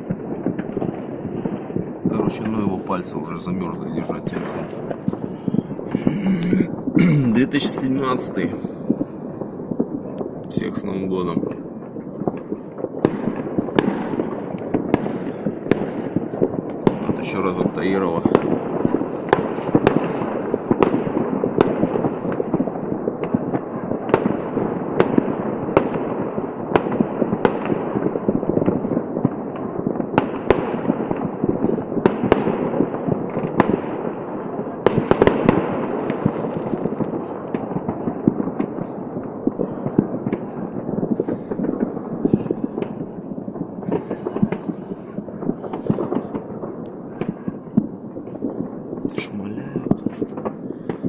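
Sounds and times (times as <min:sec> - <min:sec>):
distant fireworks bangs and crackle: 0:00.0 - 0:51.0
sharp single firework bangs: 0:11.5 - 0:51.0.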